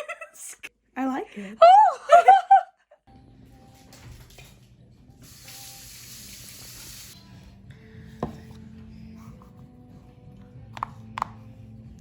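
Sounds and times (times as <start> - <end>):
faint running water hiss: 3.8 - 7.2.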